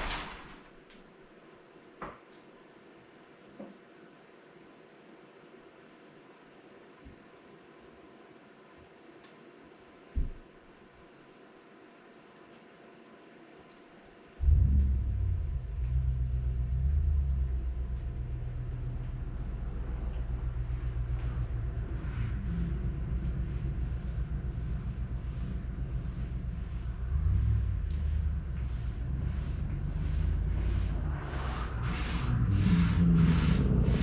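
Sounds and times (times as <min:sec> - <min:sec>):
tractor diesel engine running: 0:14.4 - 0:34.0.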